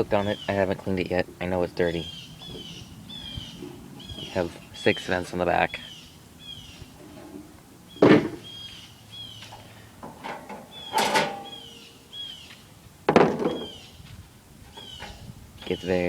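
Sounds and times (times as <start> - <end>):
metal knocks and clanks: 7.0 - 8.5, 9.5 - 11.9, 13.1 - 13.8.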